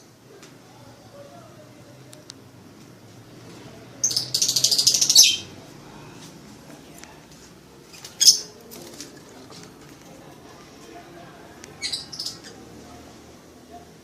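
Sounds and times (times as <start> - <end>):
bird shrill chattering song: 4.0 - 5.5, 11.8 - 12.6.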